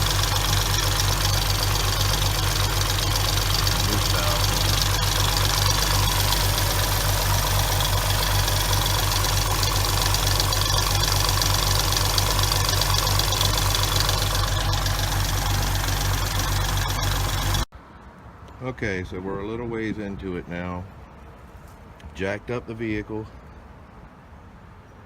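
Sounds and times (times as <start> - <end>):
car engine idling with ticking: 0.0 - 17.7.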